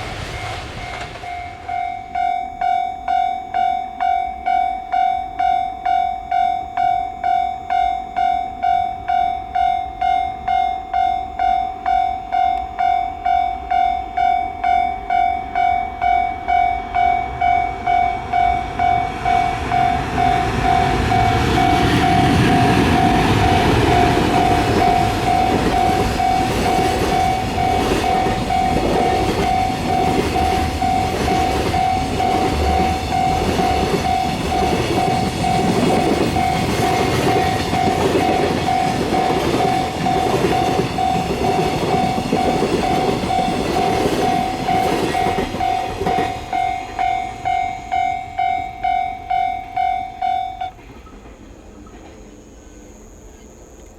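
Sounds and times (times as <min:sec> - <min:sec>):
level-crossing alarm bell: 0:00.0 - 0:51.0
train wheels clacking on rails: 0:00.0 - 0:52.3.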